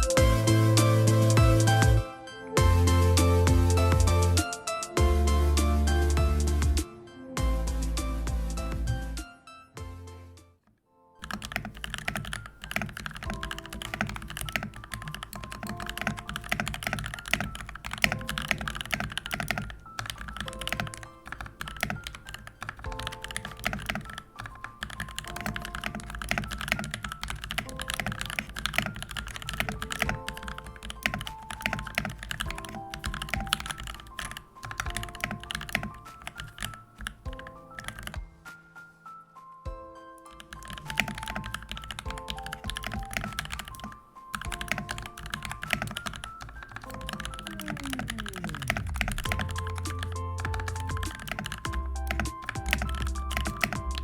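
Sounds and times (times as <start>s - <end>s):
mechanical keyboard typing: 11.2s - 38.2s, 40.3s - 54.0s.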